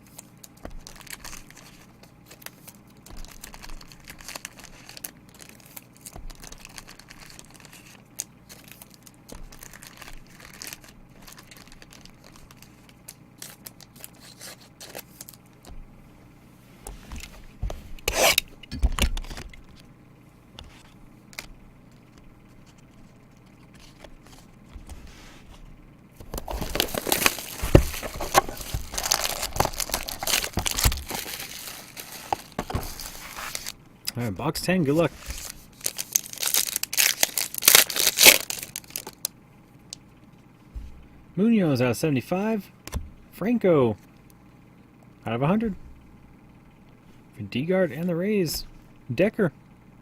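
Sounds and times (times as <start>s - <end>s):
plastic wrapping tearing and crinkling: 0.0s - 15.6s, 26.2s - 33.8s, 34.9s - 39.3s.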